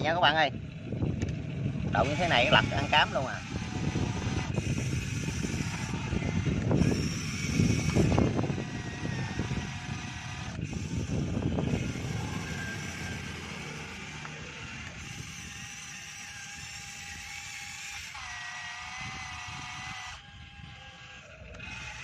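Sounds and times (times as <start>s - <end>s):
low rumbling bumps: 0.0s - 16.9s
small electric motor whining: 0.0s - 22.0s.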